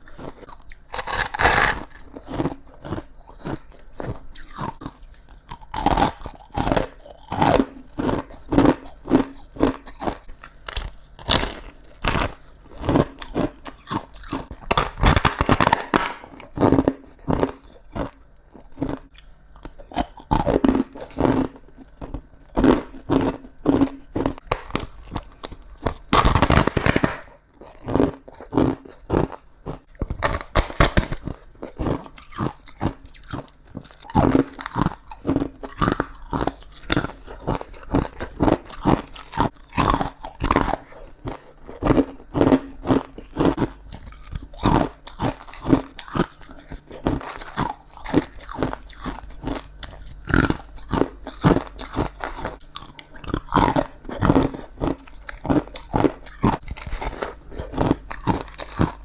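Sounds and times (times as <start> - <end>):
ice being chewed crunching: 0.0 - 59.0.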